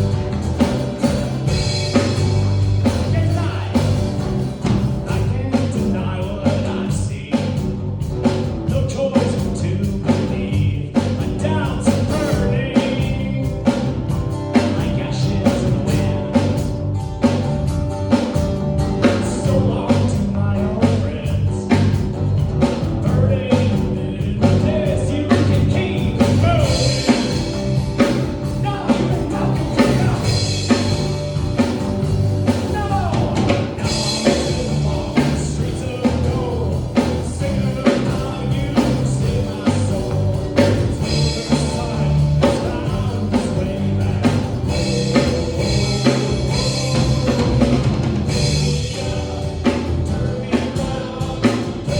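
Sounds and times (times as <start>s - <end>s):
live rock band playing: 0.0s - 51.9s
person singing: 8.7s - 16.8s, 23.0s - 51.9s.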